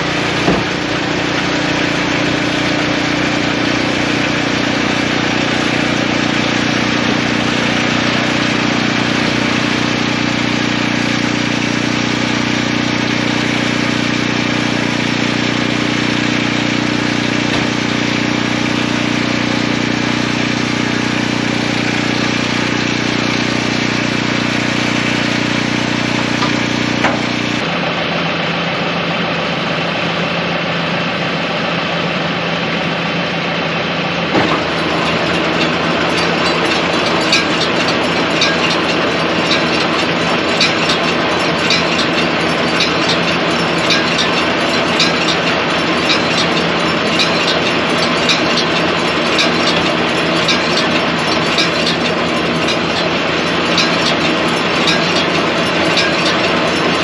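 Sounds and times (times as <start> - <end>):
tractor engine running: 0.0 - 57.0
metallic ticks and clanks: 25.6 - 27.6, 34.4 - 57.0.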